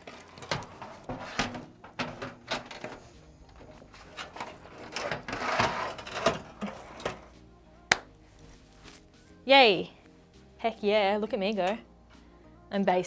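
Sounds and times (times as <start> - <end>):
rustling scrape: 0.0 - 7.4, 8.3 - 9.1.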